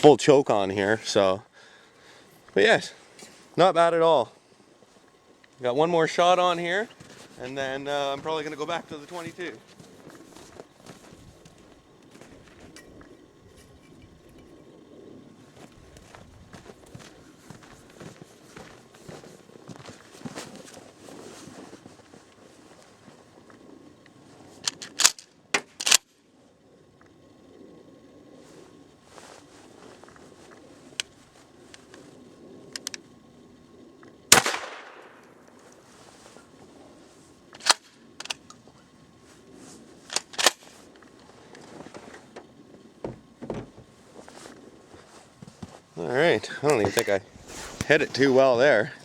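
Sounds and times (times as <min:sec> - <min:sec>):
shotgun mechanical clicks: 0:24.6 - 0:26.1, 0:37.6 - 0:38.6, 0:40.1 - 0:40.7.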